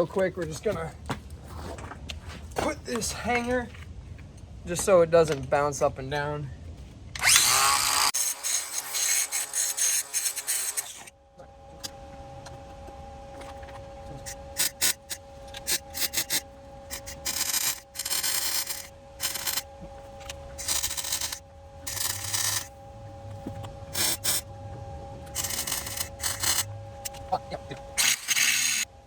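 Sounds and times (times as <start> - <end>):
steady hum: 6.2 - 29.0
welding arc crackling: 7.2 - 11.1, 14.2 - 22.8, 23.9 - 24.4, 25.3 - 28.9.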